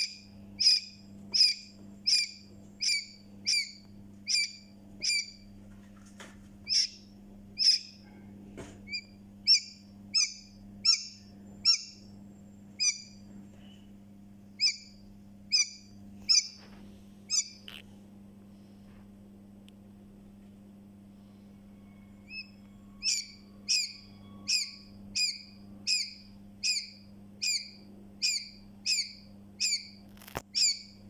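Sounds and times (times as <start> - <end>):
chick peeping: 0.0 - 5.4, 6.6 - 8.0, 12.8 - 13.2, 14.6 - 16.7, 17.3 - 17.8, 21.9 - 31.0
steady low hum: 0.0 - 31.0.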